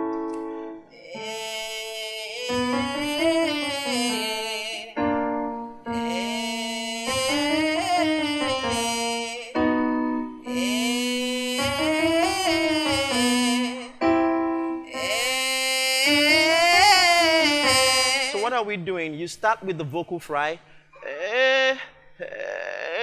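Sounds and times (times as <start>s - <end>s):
electric piano chords: 0.0s - 1.3s, 2.4s - 18.5s
person singing vocal exercise: 0.3s - 5.1s, 5.9s - 9.8s, 10.4s - 19.1s, 20.9s - 23.0s.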